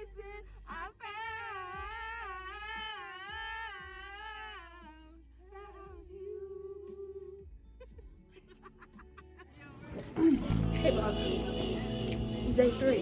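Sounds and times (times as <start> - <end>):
steady bass line: 10.2 - 13.0.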